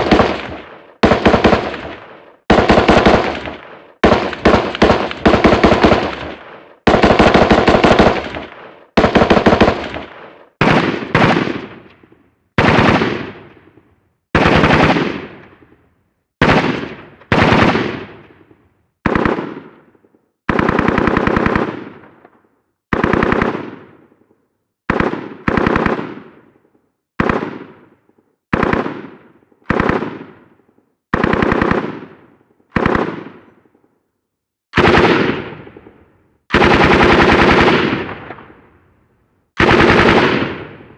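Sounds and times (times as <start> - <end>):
machine-gun bursts with echo: 0.0 - 11.8, 12.6 - 13.5, 14.3 - 15.7, 16.4 - 18.3, 19.0 - 19.9, 20.5 - 22.2, 22.9 - 24.0, 24.9 - 26.5, 27.2 - 30.5, 31.1 - 33.6, 34.8 - 38.7, 39.6 - 40.9.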